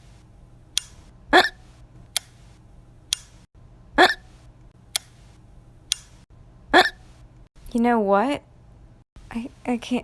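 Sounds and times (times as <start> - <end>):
person hiccupping: 1.3 - 1.6, 4.0 - 4.3, 6.8 - 7.0
sharp clicks: 3.1 - 3.4, 4.9 - 5.2, 5.9 - 6.2.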